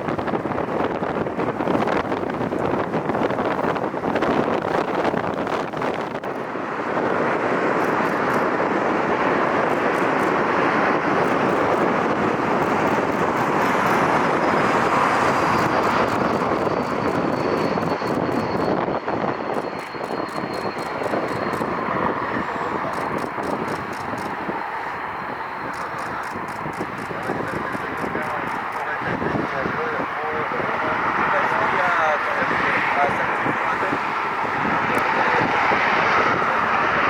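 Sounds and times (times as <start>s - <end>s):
jet engines roaring: 0.0s - 37.0s.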